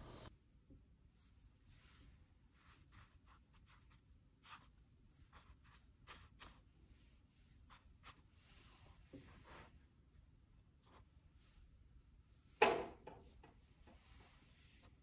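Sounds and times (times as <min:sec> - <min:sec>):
brush strokes on paper: 0:01.4 - 0:10.1, 0:13.9 - 0:15.0.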